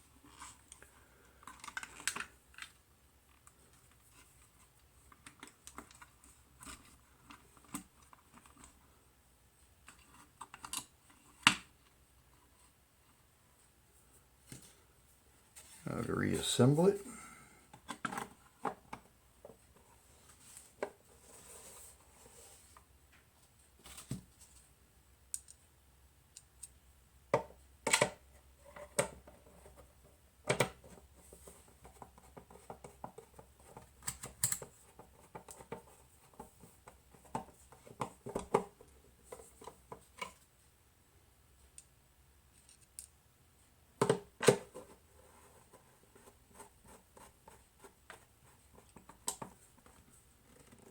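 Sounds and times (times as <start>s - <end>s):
tools and parts clicking: 42.5s - 43.2s.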